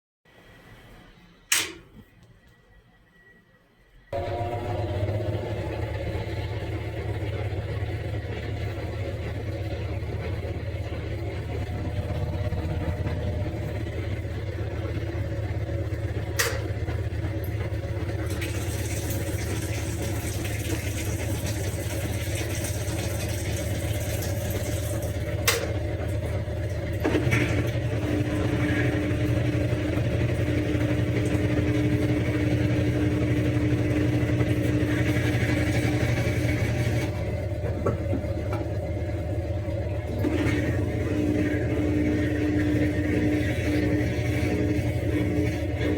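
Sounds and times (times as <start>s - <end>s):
washing machine motor hum: 0.3s - 45.9s.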